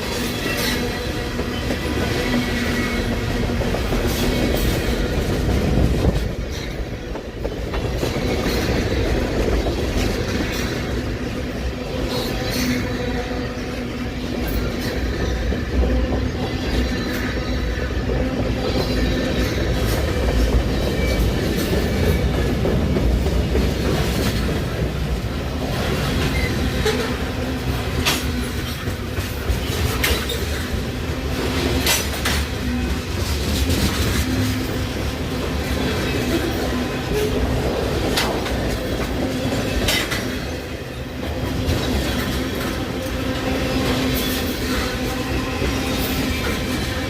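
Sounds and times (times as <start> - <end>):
train wheels rumbling on rail: 0.0 - 47.0.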